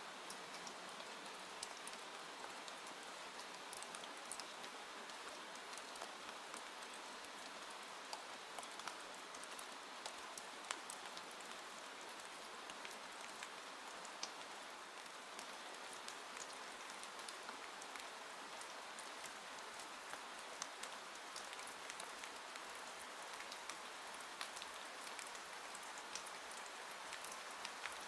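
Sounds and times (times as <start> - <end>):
rain on a window pane: 0.0 - 28.0
sharp raindrop ticks: 24.4 - 28.0.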